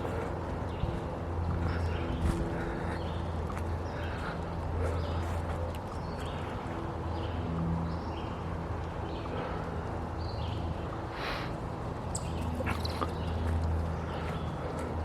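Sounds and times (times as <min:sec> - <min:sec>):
footsteps on dirt trail: 0:00.0 - 0:07.0.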